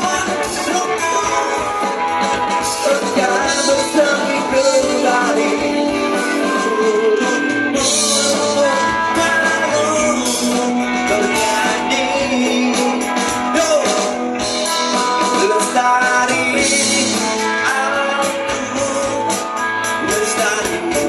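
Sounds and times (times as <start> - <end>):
person singing: 0.0 - 21.0
rock band music: 0.0 - 21.0.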